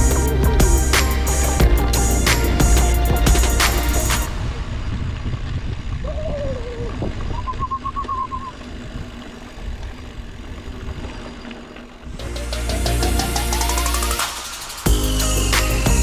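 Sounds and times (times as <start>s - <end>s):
whistling tones: 7.3s - 8.6s.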